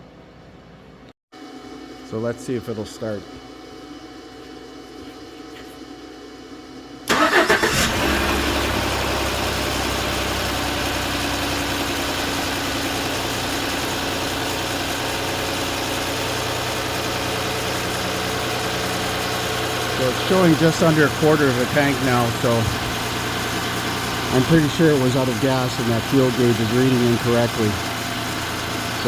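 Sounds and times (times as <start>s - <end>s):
truck engine cranking: 7.1s - 29.0s
truck engine idling: 7.1s - 29.0s.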